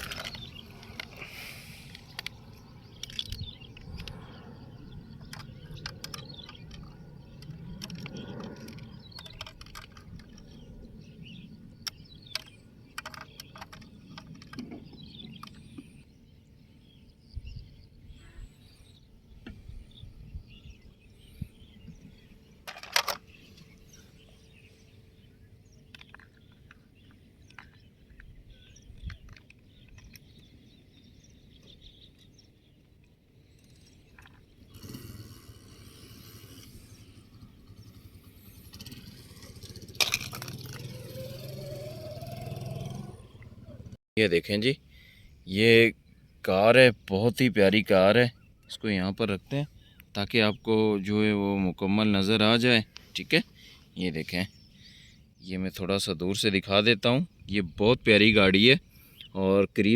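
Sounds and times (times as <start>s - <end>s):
toy vehicles clicking and knocking: 0.0s - 4.3s, 5.1s - 10.6s, 11.8s - 15.9s, 22.6s - 23.3s, 25.9s - 28.3s, 29.0s - 30.5s, 37.9s - 43.0s
birds chirping: 0.0s - 59.9s.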